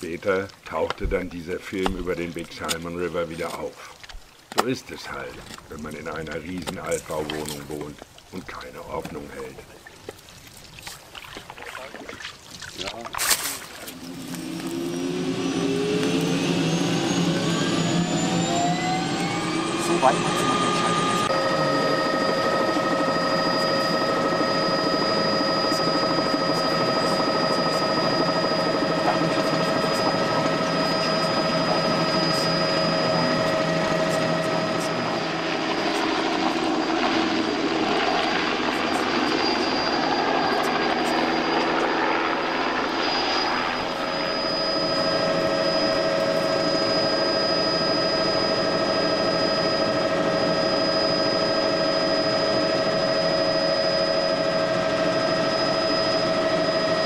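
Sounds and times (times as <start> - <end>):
small aircraft engine running: 13.4 - 57.0.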